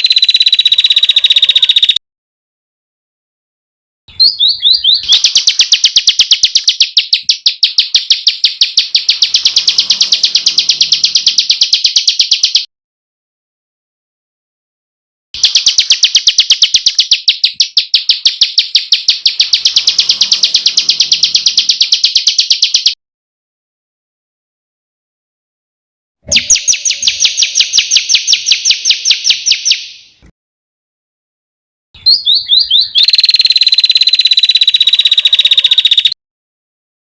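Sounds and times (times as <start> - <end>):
bird fast high chirping: 0.0 - 2.0, 4.1 - 12.7, 15.4 - 23.0, 26.3 - 30.2, 32.0 - 36.2.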